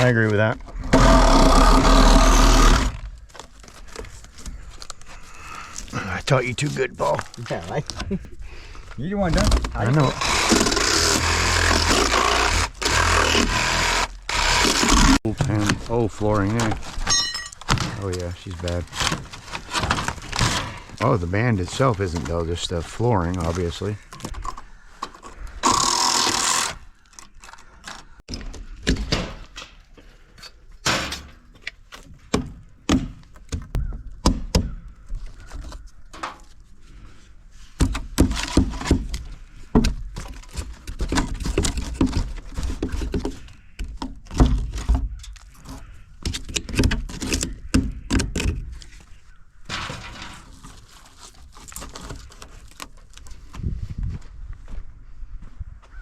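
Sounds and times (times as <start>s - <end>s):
wood and siding being pried off: 0.0s - 8.3s, 9.2s - 53.6s
loud rasping tear: 0.7s - 3.2s, 9.7s - 15.3s, 25.6s - 28.2s.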